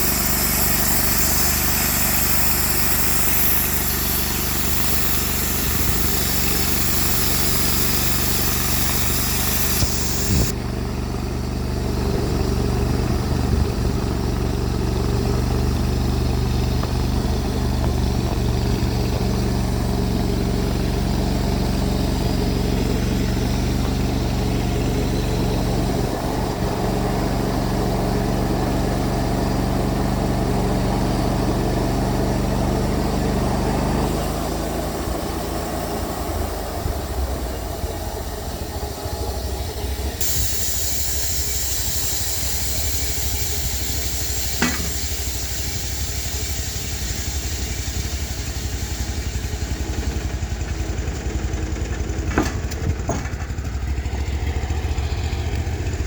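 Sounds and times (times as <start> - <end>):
saw cutting log hiss: 0.0 - 10.6, 11.7 - 56.0
gas engine running: 0.0 - 56.0.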